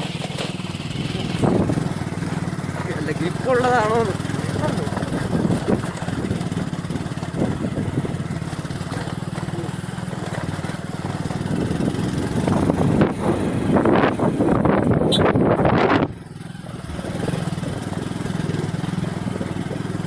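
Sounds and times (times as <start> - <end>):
motorcycle engine running: 0.0 - 20.0.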